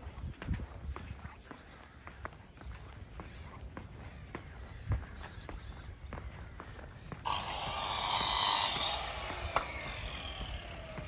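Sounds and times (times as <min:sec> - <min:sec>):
harsh rasping hiss: 0:07.3 - 0:11.0.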